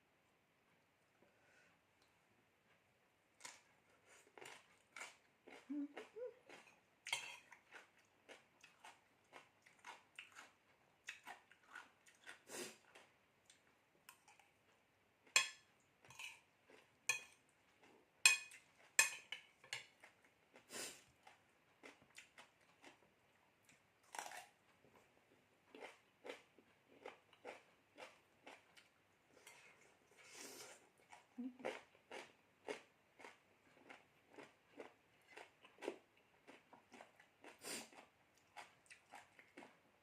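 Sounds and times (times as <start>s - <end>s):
crunching and chewing food: 2.0s - 40.0s
cutlery clicking on dish: 18.3s - 19.9s.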